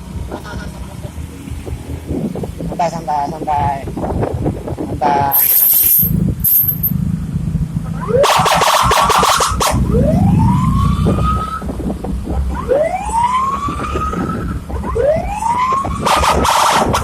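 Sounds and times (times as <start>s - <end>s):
engines rumbling: 0.0s - 17.0s
siren whooping: 8.0s - 11.7s, 12.6s - 17.0s.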